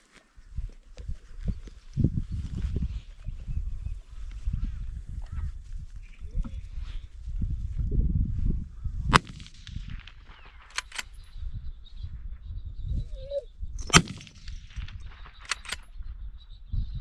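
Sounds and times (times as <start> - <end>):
rifle shots: 9.1 - 11.2, 13.8 - 15.9
sharp metallic clicks: 9.1 - 11.3, 13.8 - 15.9.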